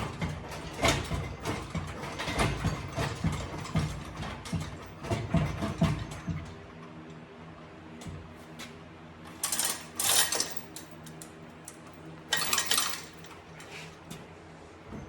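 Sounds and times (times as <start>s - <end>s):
metal tools clanking and scraping: 9.3s - 14.2s.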